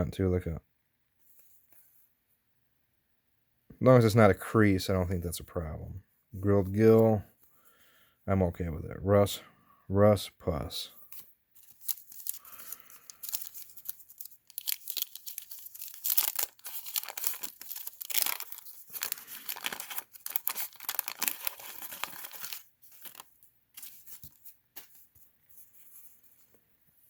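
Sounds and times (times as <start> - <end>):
wax paper wrapper tearing and crinkling: 11.6 - 24.4.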